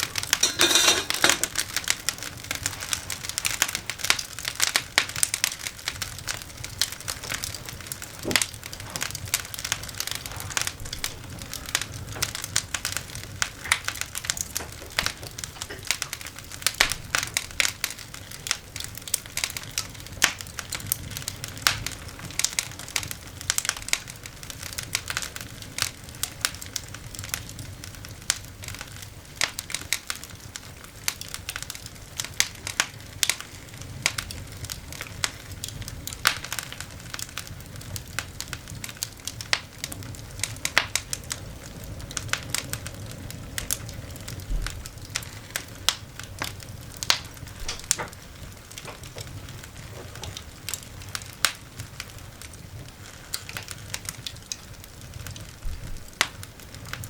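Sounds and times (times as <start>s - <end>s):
coal fire crackling: 0.0s - 57.0s.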